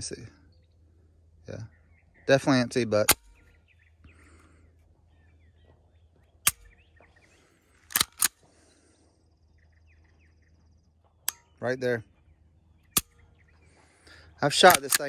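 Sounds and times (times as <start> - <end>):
faint bird chirps: 0.0 - 7.9, 8.5 - 14.4
pistol trigger clicks: 6.4 - 6.8, 7.9 - 8.4, 12.9 - 13.2, 14.6 - 15.0.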